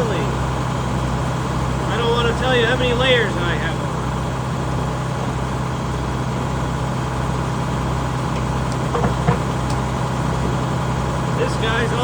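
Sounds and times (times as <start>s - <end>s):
engine idling: 0.0s - 12.0s
short knock: 8.9s - 9.5s.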